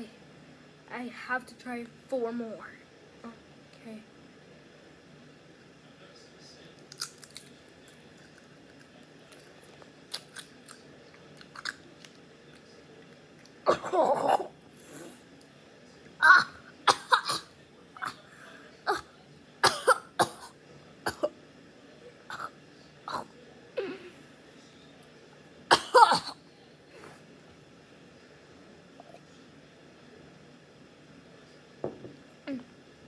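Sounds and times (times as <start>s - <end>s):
chips crunching: 6.8s - 10.8s
person coughing: 13.7s - 14.5s, 16.2s - 18.2s, 18.9s - 20.5s, 25.7s - 26.4s.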